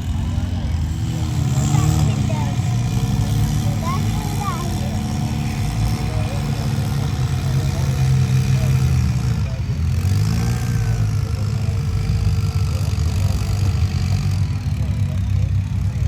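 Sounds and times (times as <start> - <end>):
vehicle engine droning: 0.0 - 16.0.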